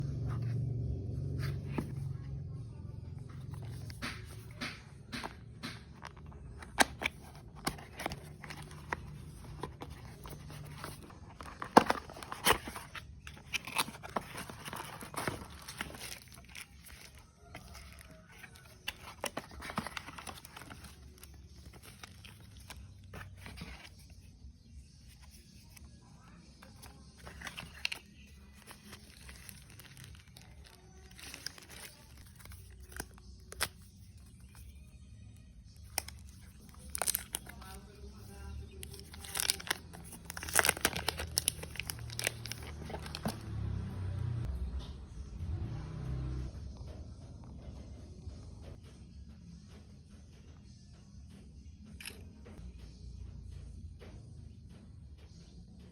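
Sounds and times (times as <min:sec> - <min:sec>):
cardboard and plastic rustling: 0:03.2 - 0:25.9, 0:26.6 - 0:34.9, 0:35.6 - 0:44.1.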